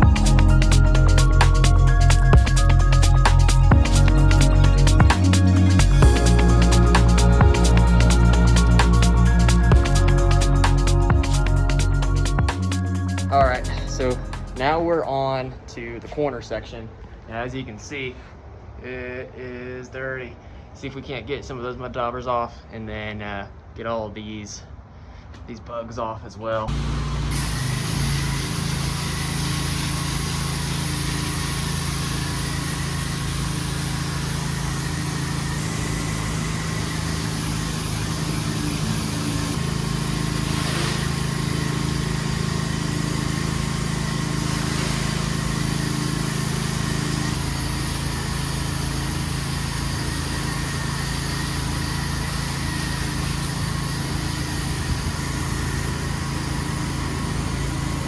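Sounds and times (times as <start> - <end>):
water spray hissing: 0.0 - 14.6, 26.7 - 58.0
petrol engine running under load: 26.7 - 58.0.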